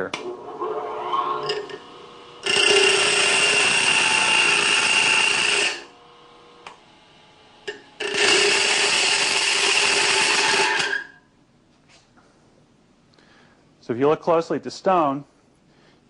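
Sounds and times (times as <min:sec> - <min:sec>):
aluminum on grinding wheel: 0:00.3 - 0:06.6, 0:07.7 - 0:11.1.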